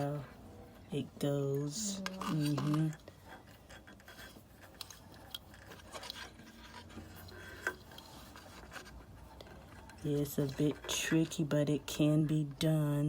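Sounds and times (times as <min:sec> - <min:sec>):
clicks and rubbing of thread: 0:02.0 - 0:11.8.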